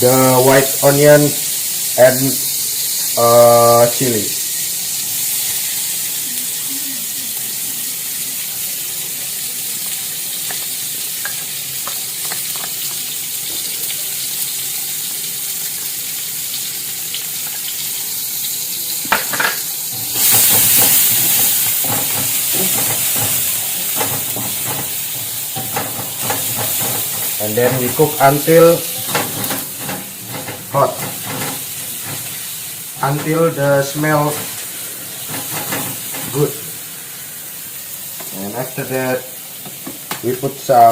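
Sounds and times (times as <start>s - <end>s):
food sizzling in a pan: 0.0s - 40.9s
spatula scraping and tapping: 19.2s - 28.1s, 29.0s - 32.4s, 35.3s - 36.4s.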